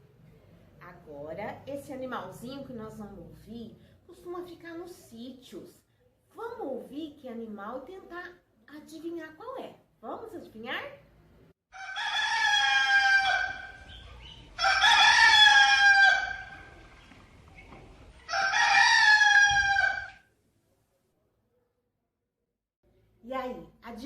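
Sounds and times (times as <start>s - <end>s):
rooster crowing: 11.7s - 17.0s, 18.2s - 20.2s.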